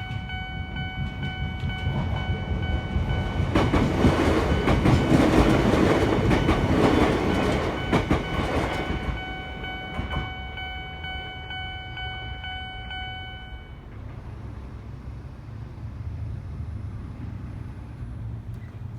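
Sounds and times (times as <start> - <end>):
train wheels clattering: 0.0 - 10.6
crossing warning bell ringing: 0.0 - 14.4.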